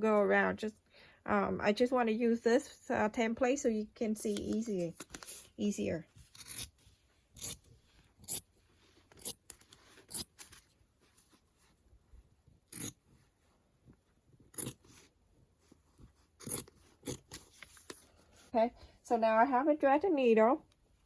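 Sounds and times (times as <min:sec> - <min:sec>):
scissors snipping fabric: 0:07.4 - 0:08.5, 0:09.1 - 0:10.6, 0:12.7 - 0:13.0, 0:14.5 - 0:15.0, 0:16.4 - 0:17.5.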